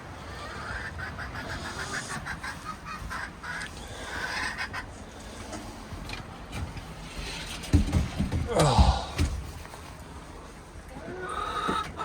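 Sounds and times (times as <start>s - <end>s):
chickens squawking and clucking: 0.0s - 5.9s, 10.9s - 12.0s.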